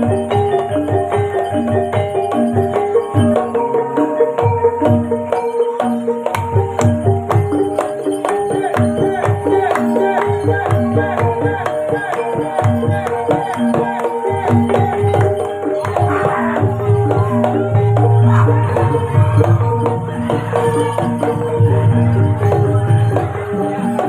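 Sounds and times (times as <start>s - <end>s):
gamelan melody notes: 0.0s - 24.0s
hand-drum beats: 0.0s - 24.0s
held low tone: 15.9s - 23.6s.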